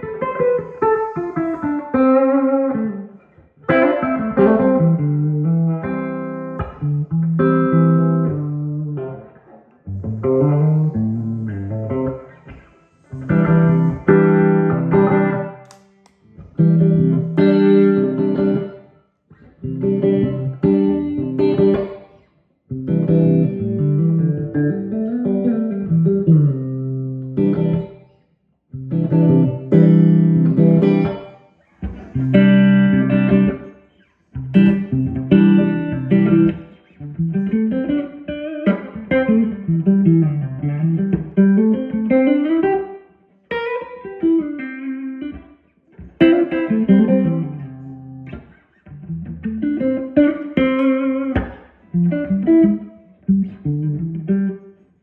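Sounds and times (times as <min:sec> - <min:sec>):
electric guitar through amplifier: 0:00.0 - 0:54.9.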